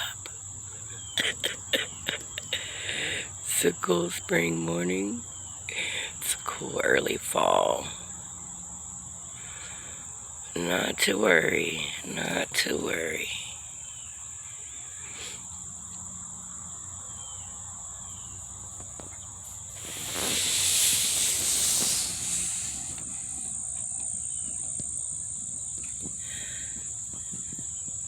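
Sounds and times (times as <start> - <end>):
insects trilling: 0.0 - 28.0
loud hissing rush of noise: 1.2 - 8.2, 17.9 - 24.0.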